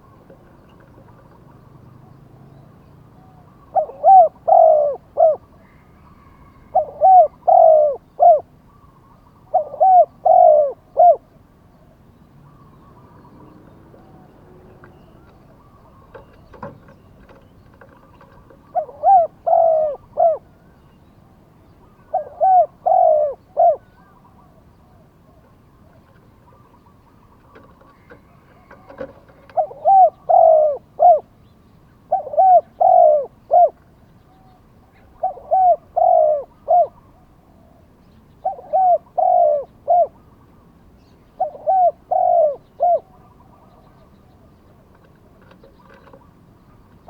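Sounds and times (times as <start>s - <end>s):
dove cooing: 0.0s - 20.8s, 21.6s - 31.4s, 32.0s - 40.4s, 41.3s - 47.0s.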